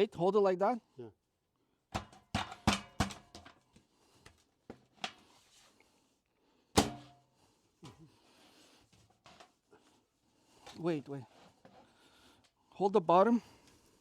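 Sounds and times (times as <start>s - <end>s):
metal pipe knocks and taps: 2.0s - 3.5s
metal pipe clank ringing: 6.8s - 7.2s.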